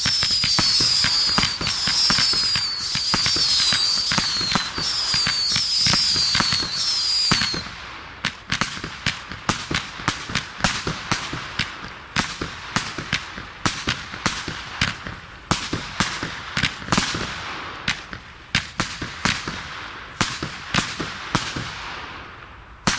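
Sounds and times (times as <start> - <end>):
firework whistles: 0.0 - 7.8
firework bangs: 0.0 - 11.4.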